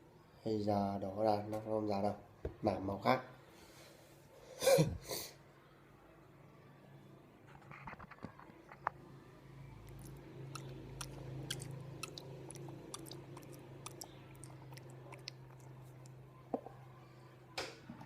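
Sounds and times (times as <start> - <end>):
low steady hum: 9.0 - 17.5.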